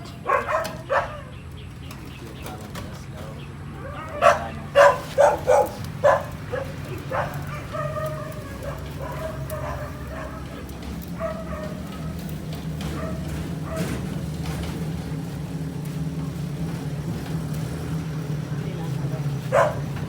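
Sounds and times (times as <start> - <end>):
dog barking: 0.0 - 1.4, 3.8 - 14.3, 19.4 - 20.0
dog whining: 3.8 - 10.6, 19.4 - 20.0.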